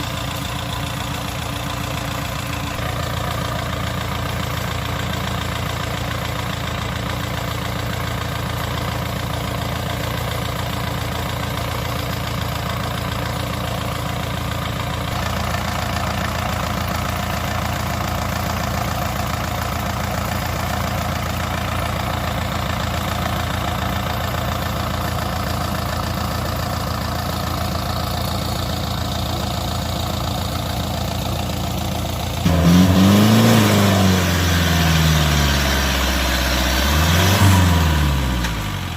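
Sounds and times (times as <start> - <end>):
diesel engine running: 0.0 - 38.9.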